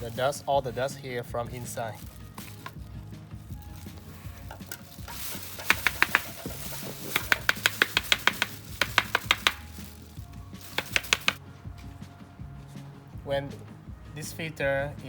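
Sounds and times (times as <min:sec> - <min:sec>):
plastic filter being tapped: 0:02.4 - 0:02.9, 0:03.8 - 0:11.4.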